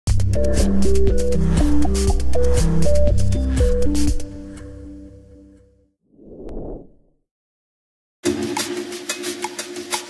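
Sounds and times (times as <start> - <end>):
music with bass and beat: 0.1 - 4.9.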